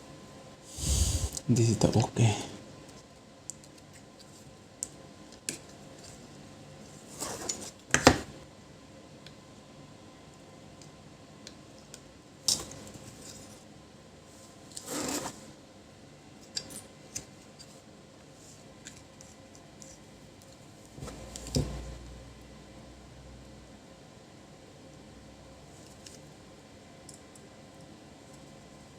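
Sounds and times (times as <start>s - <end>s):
scrape on workbench: 0.8s - 1.4s.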